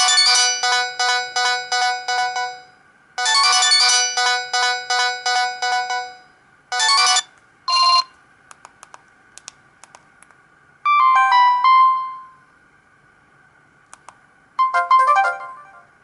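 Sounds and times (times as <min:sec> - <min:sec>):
electronic beep ringtone melody: 0:00.0 - 0:06.2, 0:06.8 - 0:08.1.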